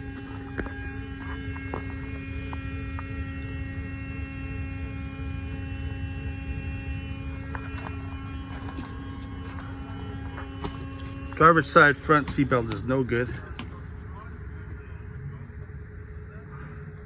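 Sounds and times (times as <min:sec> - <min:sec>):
wavering tone: 0:00.0 - 0:11.8
steady background hum: 0:00.0 - 0:17.0.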